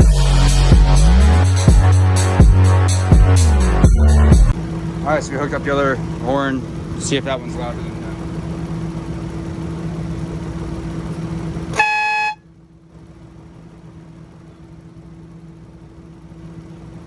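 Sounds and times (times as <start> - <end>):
mechanical drone: 0.0 - 12.8
air horn blast: 11.7 - 12.5.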